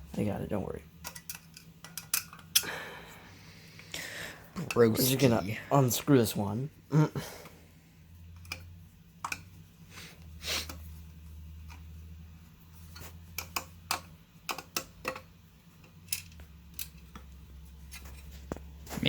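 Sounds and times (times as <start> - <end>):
low steady hum: 0.0 - 19.0
screwdriver clicks and taps: 8.4 - 9.5, 13.4 - 17.4.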